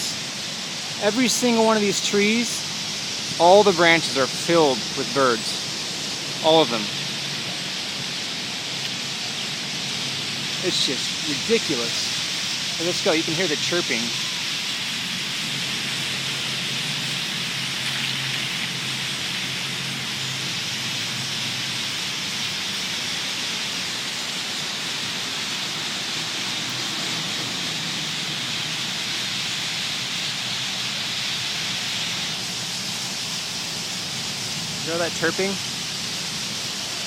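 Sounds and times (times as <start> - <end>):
flock of birds chirping: 10.5 - 19.0.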